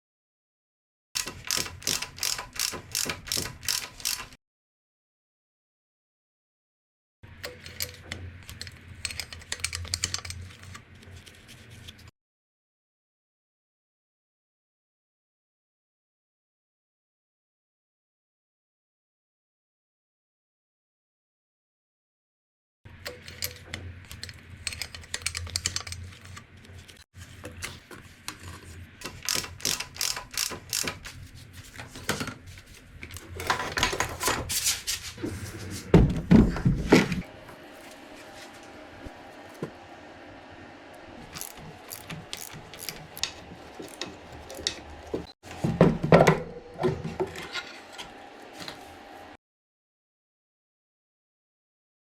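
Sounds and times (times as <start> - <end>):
metallic tool clicks and ratcheting: 1.2 - 4.4, 7.4 - 10.8, 23.0 - 26.4, 29.0 - 31.1, 41.3 - 44.8.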